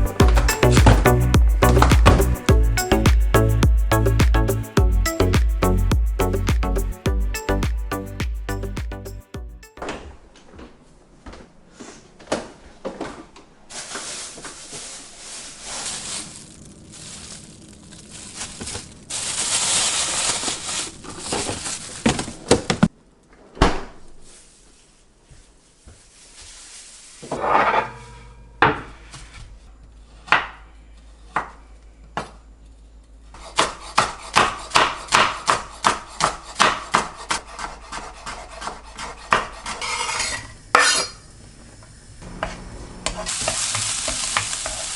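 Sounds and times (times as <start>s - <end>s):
rustling: 13.7s - 22.9s, 24.0s - 28.0s.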